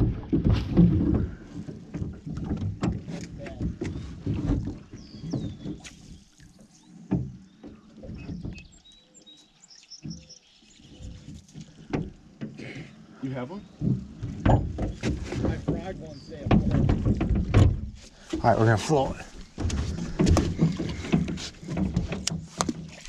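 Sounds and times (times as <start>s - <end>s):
paddle knocking against hull: 0.0s - 6.3s, 7.0s - 8.8s, 10.0s - 23.0s
water sloshing: 0.0s - 23.0s
birds chirping: 3.4s - 16.9s.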